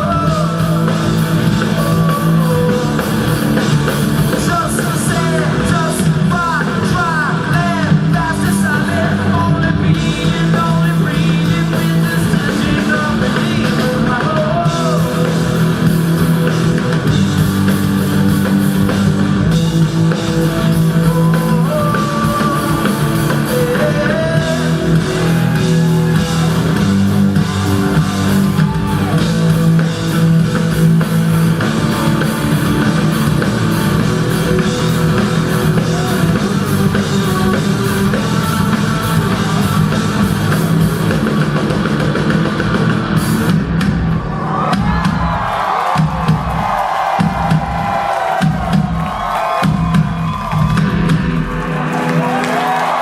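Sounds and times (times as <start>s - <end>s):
person singing: 0.0s - 15.6s, 20.5s - 29.2s, 34.3s - 41.2s
electric guitar: 0.0s - 45.8s
bass line: 0.0s - 53.0s
drum kit: 0.0s - 53.0s.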